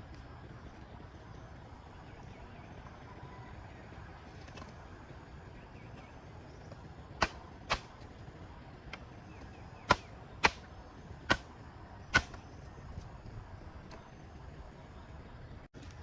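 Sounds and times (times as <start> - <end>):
sharp knocks: 9.9 - 10.6, 12.2 - 12.4.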